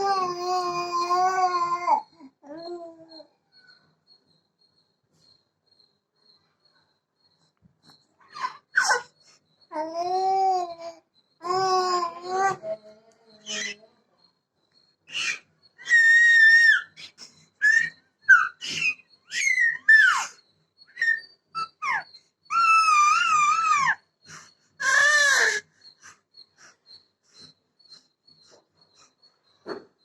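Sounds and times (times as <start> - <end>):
baby squealing: 8.3 - 9.1, 13.4 - 13.8, 15.1 - 20.4, 21.0 - 24.0, 24.8 - 25.6.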